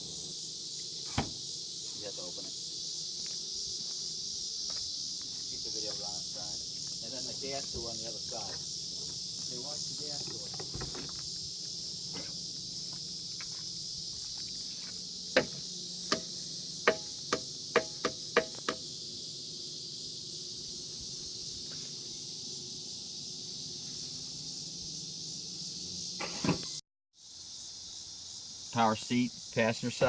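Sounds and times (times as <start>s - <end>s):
crickets chirping: 0.0s - 30.0s
fuel filler door clicks and knocks: 1.1s - 1.4s.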